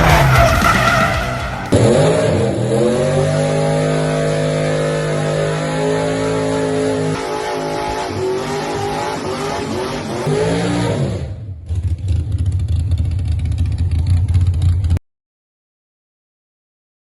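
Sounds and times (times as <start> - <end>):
car engine revving: 0.0 - 15.0
engine low rumble: 11.4 - 15.0.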